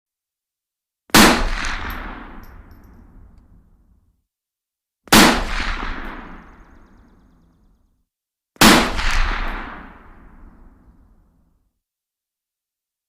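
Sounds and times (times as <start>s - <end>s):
rifle shots echoing: 1.1s - 2.9s, 5.1s - 6.8s.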